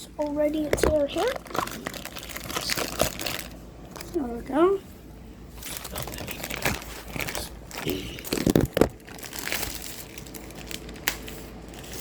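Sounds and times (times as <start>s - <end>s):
packaging tearing and crinkling: 1.0s - 4.1s, 5.6s - 12.0s.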